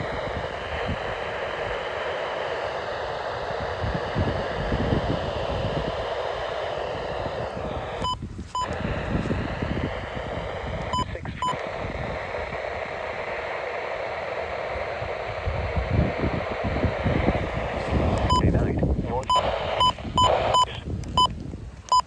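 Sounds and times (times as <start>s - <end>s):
wind buffeting microphone: 0.0s - 1.8s, 3.4s - 13.1s, 14.7s - 21.8s
radio static hiss: 0.0s - 22.0s
short electronic beeps: 18.2s - 18.6s.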